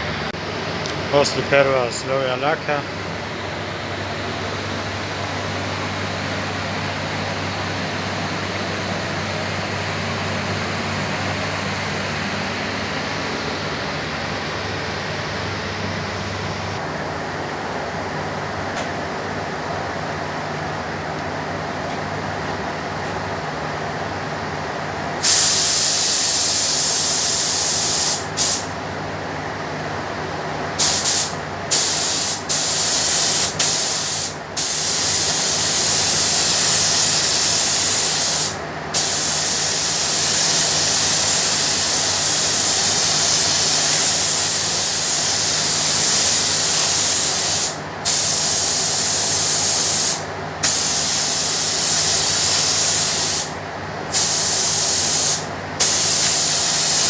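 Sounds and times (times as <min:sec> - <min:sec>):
steady low hum: 0:00.0 - 0:57.0
spray gun hissing: 0:25.2 - 0:28.7, 0:30.8 - 0:57.0.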